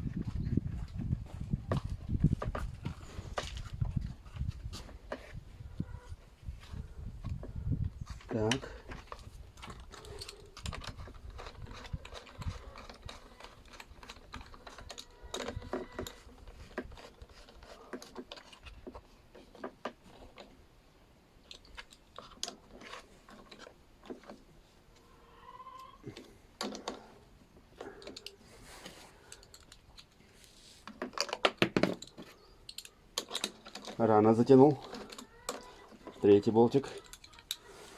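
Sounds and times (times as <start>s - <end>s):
metal parts and tools clicking: 8.4s - 20.5s, 21.4s - 24.4s, 27.8s - 30.2s, 30.8s - 37.7s.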